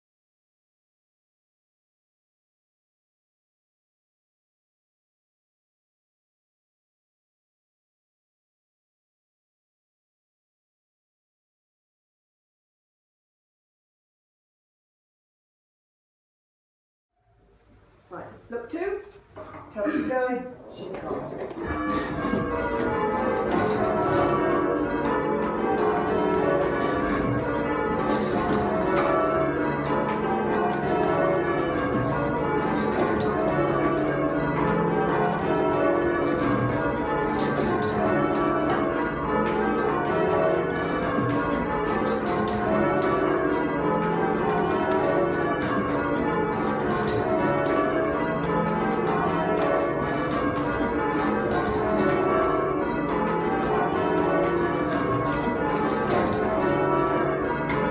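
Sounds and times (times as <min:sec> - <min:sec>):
church bells change ringing: 0:21.5 - 0:57.9.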